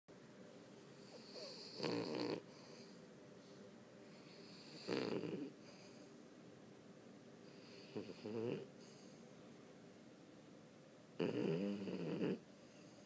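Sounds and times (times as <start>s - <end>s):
person snoring: 1.1s - 2.5s, 4.4s - 5.6s, 11.2s - 12.4s.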